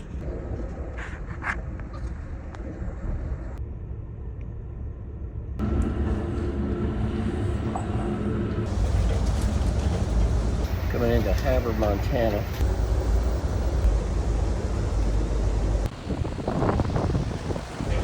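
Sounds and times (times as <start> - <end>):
passenger train rumbling: 5.6 - 18.0.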